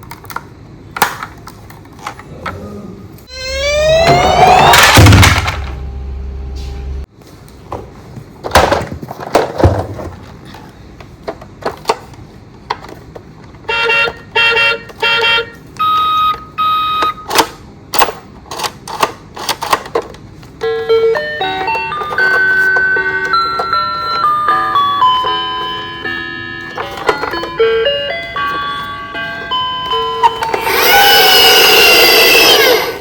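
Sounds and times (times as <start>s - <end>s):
toy siren wail: 3.3s - 5.1s, 29.9s - 33.0s
low electronic hum: 3.3s - 7.1s.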